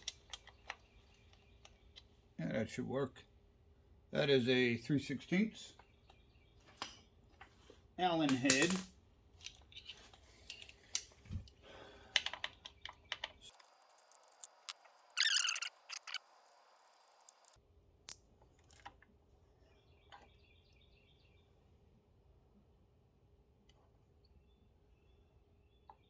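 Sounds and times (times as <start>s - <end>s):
metal rattling: 8.3s - 8.9s
metallic clicks of allen key and bolts: 8.3s - 8.9s.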